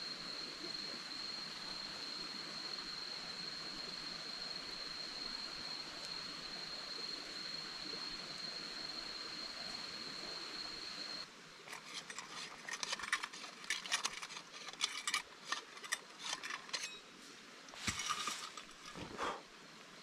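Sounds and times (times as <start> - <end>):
hiss with high whine: 0.0 - 12.5
brief rustle: 11.7 - 17.0
small hard objects clinking: 11.7 - 17.0, 17.8 - 19.0.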